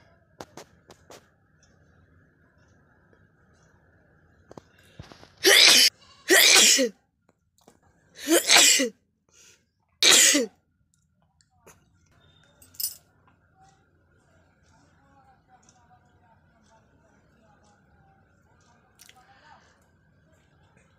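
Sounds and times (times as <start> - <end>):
person sneezing: 5.4 - 6.9, 8.2 - 8.9, 10.0 - 10.5.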